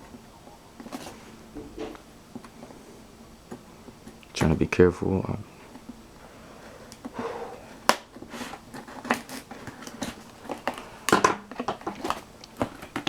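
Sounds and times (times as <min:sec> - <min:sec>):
cardboard clicks and scrapes: 0:08.2 - 0:10.8.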